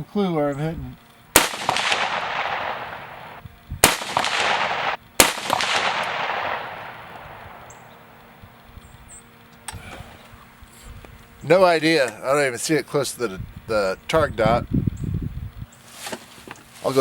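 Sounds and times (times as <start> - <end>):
rifle shots with rolling echo: 1.3 - 8.4.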